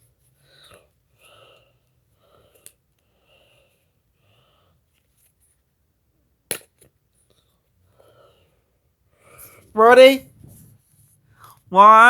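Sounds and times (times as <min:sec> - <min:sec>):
person breathing: 0:00.4 - 0:04.9, 0:07.9 - 0:09.8, 0:11.2 - 0:11.7.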